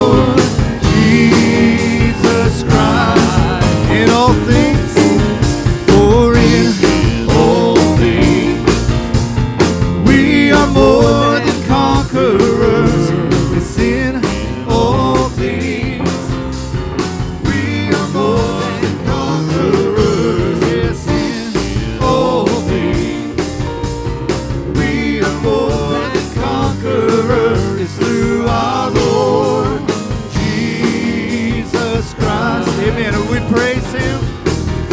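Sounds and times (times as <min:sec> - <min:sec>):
band playing upbeat worship song: 0:00.0 - 0:34.9.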